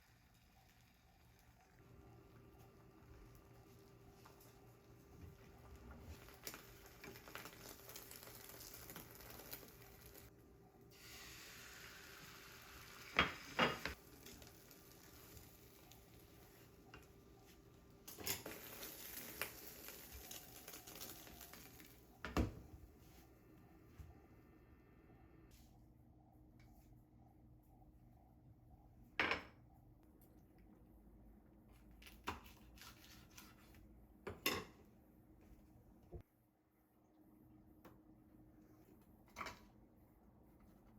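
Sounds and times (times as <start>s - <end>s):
food sizzling in a pan: 0.0s - 10.3s, 10.9s - 16.7s, 18.1s - 22.1s.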